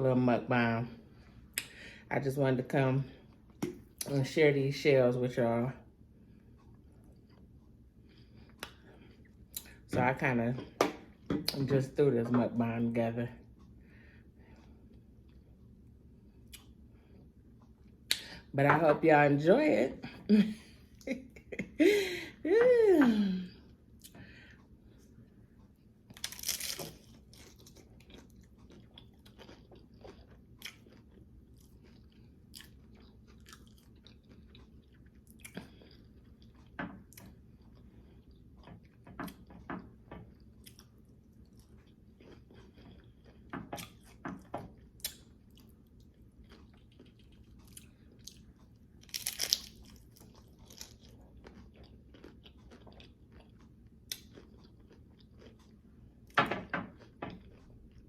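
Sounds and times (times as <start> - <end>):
crunchy taco shell chewing: 26.1 - 39.5, 40.4 - 55.8, 56.9 - 58.0.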